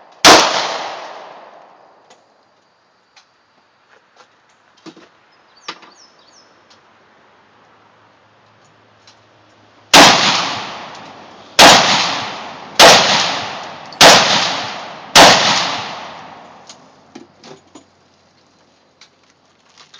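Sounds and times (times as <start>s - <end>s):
rifle shots echoing: 0.2s - 1.7s, 9.9s - 16.7s.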